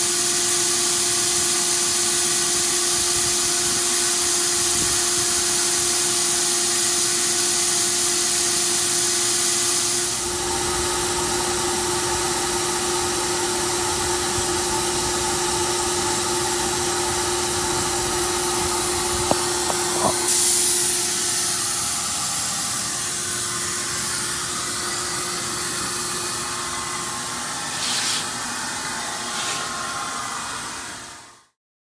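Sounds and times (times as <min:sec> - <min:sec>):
vacuum cleaner motor whining: 0:09.8 - 0:31.4.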